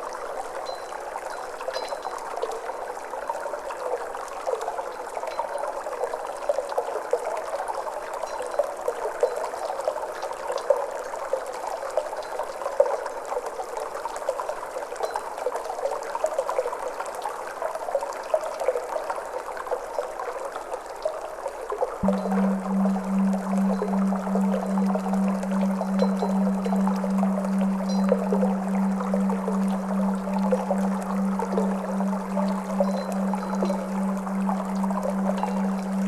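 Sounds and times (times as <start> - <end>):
water trickling and babbling: 21.1 - 36.0.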